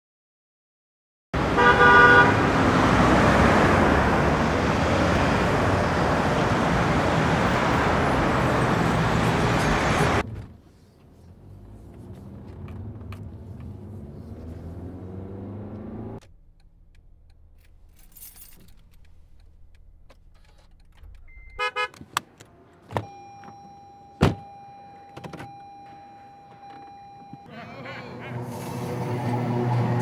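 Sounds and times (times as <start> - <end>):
car engine accelerating: 1.4 - 19.9, 27.8 - 30.0.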